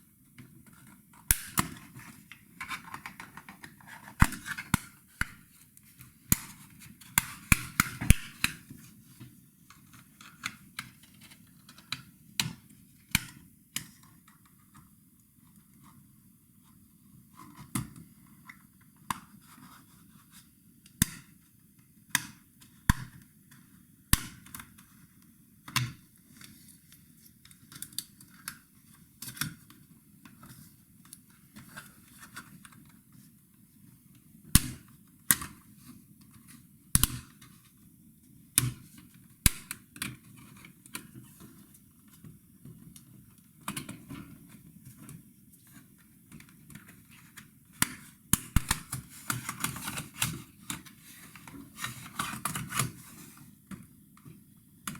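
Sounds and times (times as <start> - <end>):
plastic snapping loudly: 48.4 - 49.0.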